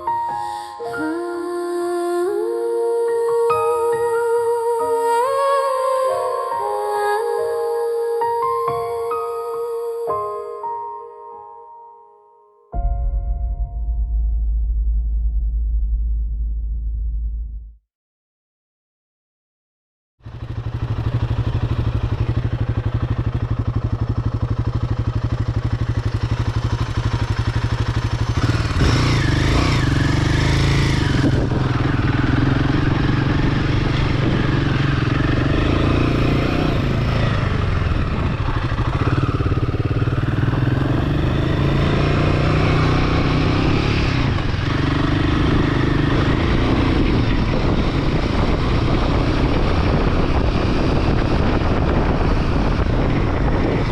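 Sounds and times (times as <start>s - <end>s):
motorcycle engine running: 20.2s - 53.9s.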